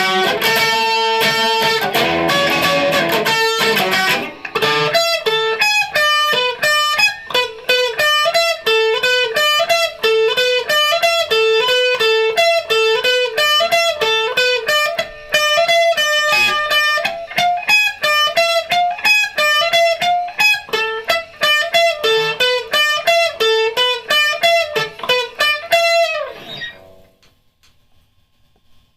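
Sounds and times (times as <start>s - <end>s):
electric guitar picking notes: 0.0s - 27.2s.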